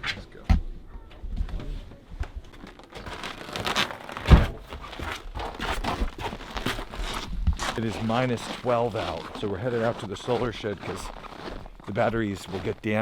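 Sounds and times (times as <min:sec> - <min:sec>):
clothing rustling: 0:01.6 - 0:13.0
footsteps crunching on snow: 0:02.6 - 0:13.0
heavy thump: 0:04.2 - 0:04.7.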